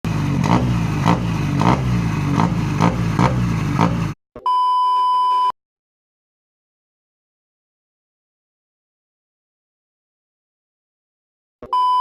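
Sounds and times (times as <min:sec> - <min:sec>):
engine rumbling through loud exhaust: 0:00.0 - 0:04.2
high electronic beep: 0:04.4 - 0:05.6, 0:11.7 - 0:12.0.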